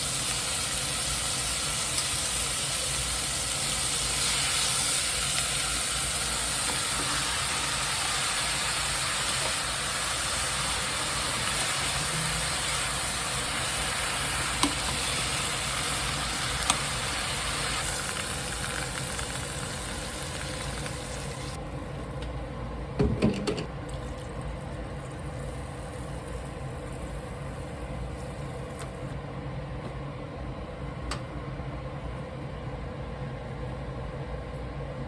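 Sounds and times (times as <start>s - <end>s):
stove hissing: 0.0s - 35.0s.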